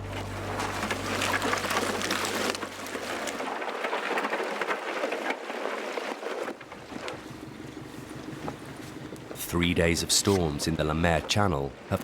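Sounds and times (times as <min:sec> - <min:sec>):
low steady hum: 0:00.0 - 0:03.6
water rushing along hull: 0:00.0 - 0:12.0
small crackles and ticks: 0:00.6 - 0:09.4.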